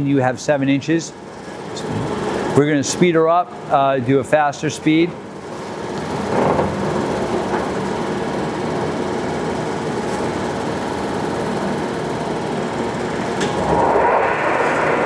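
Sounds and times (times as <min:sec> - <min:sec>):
lathe running with mechanical whir: 0:04.8 - 0:15.0.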